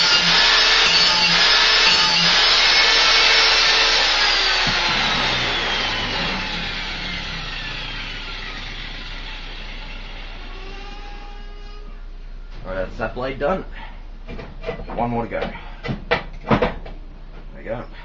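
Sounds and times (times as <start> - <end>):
angle grinder grinding steel: 0.0 - 11.6
grinder spinning down: 0.0 - 11.6.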